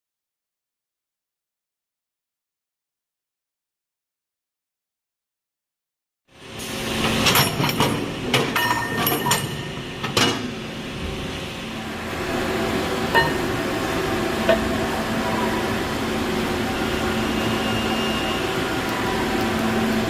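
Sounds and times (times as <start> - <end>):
steady machine hum: 6.3 - 20.0
metal pipes clanking: 7.0 - 10.5, 13.0 - 13.6, 14.4 - 14.9.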